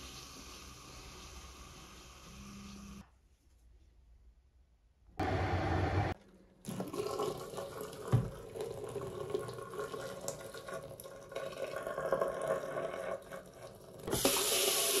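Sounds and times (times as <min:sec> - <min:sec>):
water running from a tap: 0:06.7 - 0:15.0.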